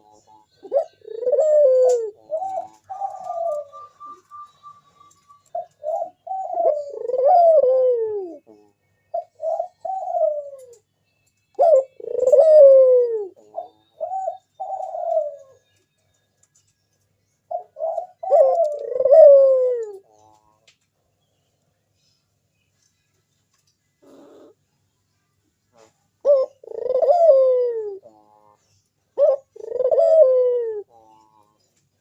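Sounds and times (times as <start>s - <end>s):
dove cooing: 0.0s - 10.8s, 11.6s - 15.7s, 17.5s - 20.4s, 24.0s - 24.6s, 25.8s - 31.6s.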